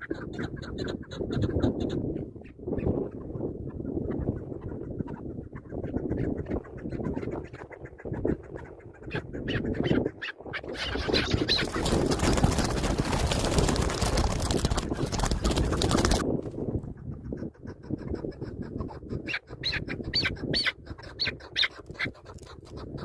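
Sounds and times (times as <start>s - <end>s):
partridge clucking and squawking: 4.1s - 16.3s, 17.0s - 23.0s.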